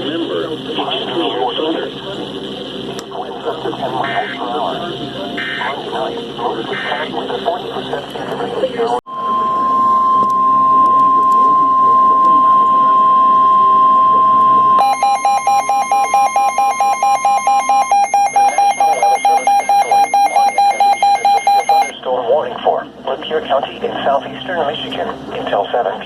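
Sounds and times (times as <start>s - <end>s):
steady warning alarm tone: 0.0s - 8.0s, 9.0s - 22.0s
rapid electronic alert beeps: 3.8s - 7.2s, 9.1s - 22.0s.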